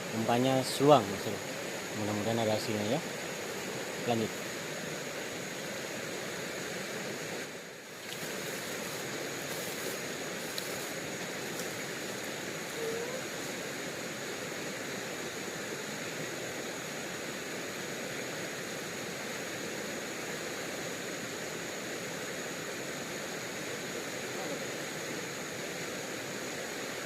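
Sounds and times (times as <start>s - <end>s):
river water rushing: 0.0s - 27.0s
thin high steady tone: 11.8s - 14.2s.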